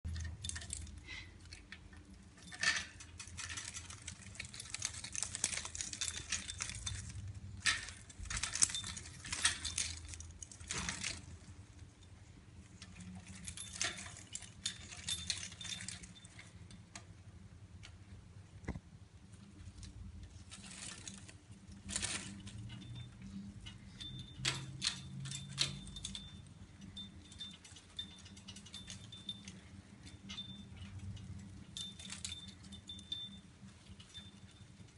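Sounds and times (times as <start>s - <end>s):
bird toys jangling and rattling: 0.0s - 16.9s, 19.5s - 34.9s.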